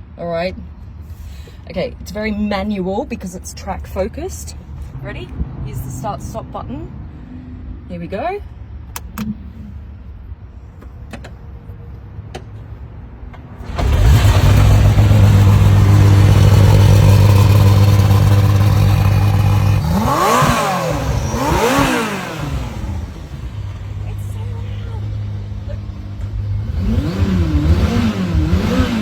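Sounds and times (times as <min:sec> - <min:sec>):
car engine starting and revving: 0:13.6 - 0:29.0.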